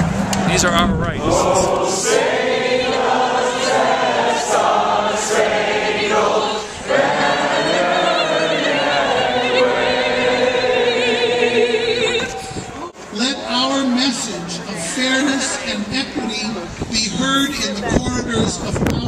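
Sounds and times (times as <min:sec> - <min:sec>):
group of voices singing: 0:01.1 - 0:12.8.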